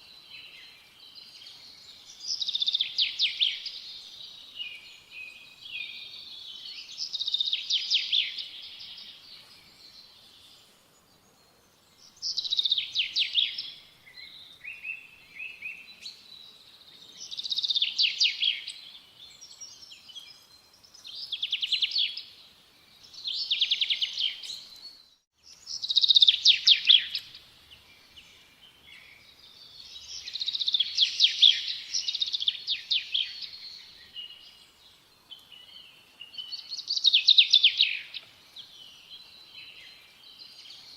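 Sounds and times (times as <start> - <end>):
songbird trilling: 25.6 - 27.4, 30.0 - 33.7.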